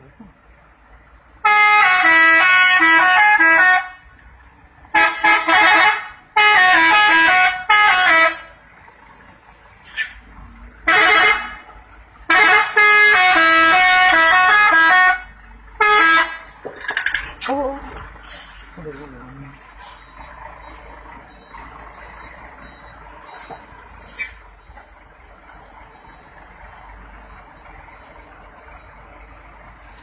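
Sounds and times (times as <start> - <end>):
musical air horn melodies: 1.4 - 4.0, 5.0 - 8.5, 10.9 - 11.6, 12.3 - 16.4.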